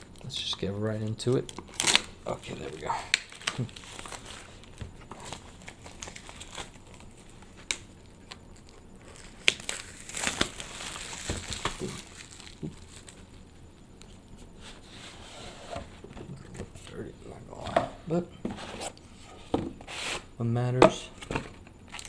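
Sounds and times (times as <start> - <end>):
plastic shrink wrap crinkling: 1.2 - 14.9.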